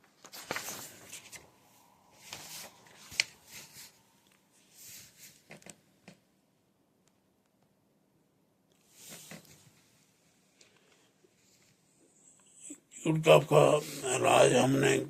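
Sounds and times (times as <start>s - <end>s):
faint rustling: 0.1s - 5.8s.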